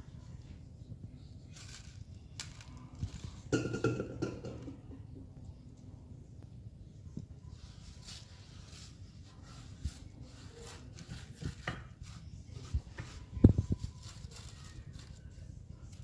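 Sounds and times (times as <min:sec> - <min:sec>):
low steady hum: 0:00.0 - 0:16.0
dough rubbing in frying pan: 0:07.5 - 0:16.0.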